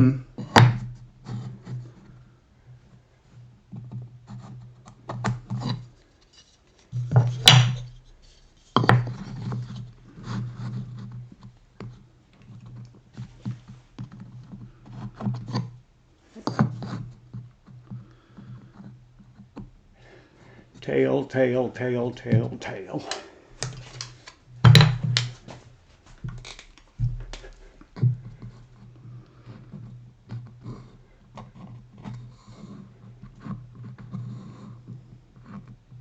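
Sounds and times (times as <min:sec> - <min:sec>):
scratching and rubbing on workbench: 0:03.8 - 0:11.3
wooden knocks: 0:07.0 - 0:08.0, 0:24.6 - 0:25.4.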